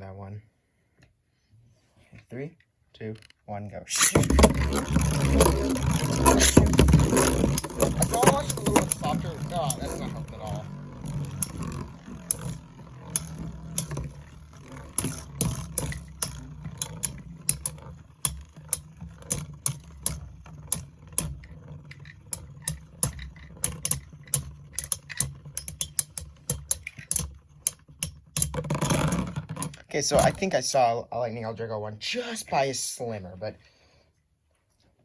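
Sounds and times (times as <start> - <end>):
spinning tops clacking: 3.9 - 30.6.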